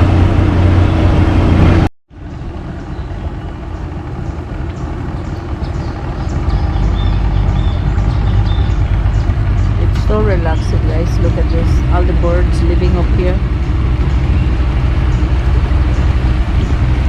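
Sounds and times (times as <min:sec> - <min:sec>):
boat motor humming: 0:00.0 - 0:17.0
high bird chirps: 0:02.7 - 0:09.8.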